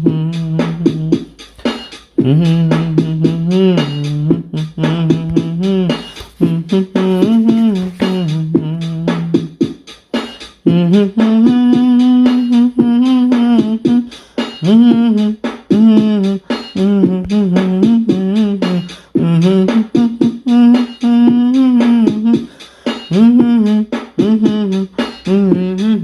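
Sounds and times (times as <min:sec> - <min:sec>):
fast clicking beat: 0:00.0 - 0:26.0.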